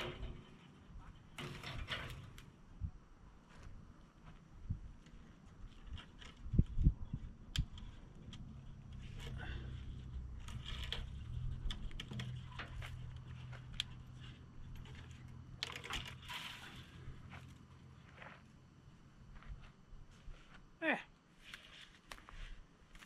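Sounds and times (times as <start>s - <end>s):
handling clicks and scrapes: 0.0s - 2.5s, 5.0s - 17.6s.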